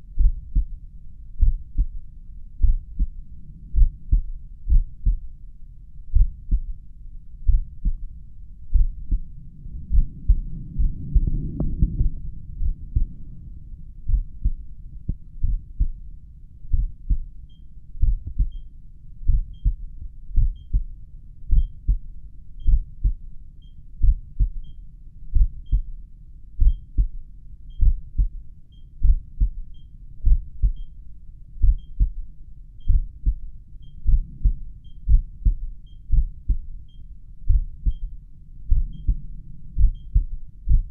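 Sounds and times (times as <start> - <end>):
heartbeat through stethoscope: 0.0 - 16.1, 16.7 - 26.0, 26.6 - 28.4, 29.0 - 31.0, 31.6 - 40.9
faint high monitor beeps: 17.4 - 17.8, 18.4 - 18.8, 20.4 - 20.8, 21.6 - 21.9, 22.6 - 23.0, 23.6 - 23.9, 24.5 - 24.9, 25.6 - 25.9, 26.6 - 27.0, 28.7 - 29.0, 29.7 - 30.0, 30.7 - 31.0, 31.7 - 32.1, 32.8 - 33.2, 33.8 - 37.2, 37.8 - 38.2, 38.8 - 39.2, 39.8 - 40.3.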